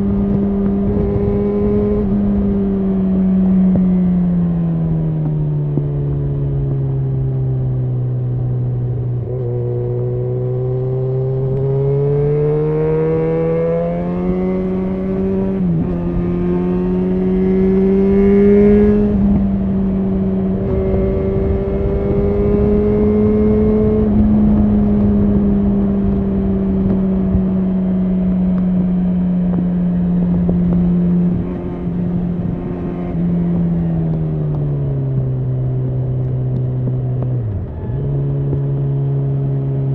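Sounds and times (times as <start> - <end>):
motorcycle engine under way: 0.0 - 39.9.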